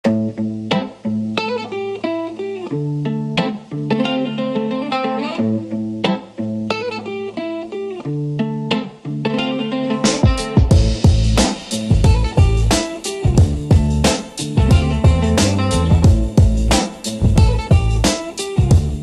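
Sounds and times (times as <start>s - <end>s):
plucked guitar tune: 0.0s - 19.0s
drum hits: 10.1s - 19.0s
bass line: 10.7s - 19.0s.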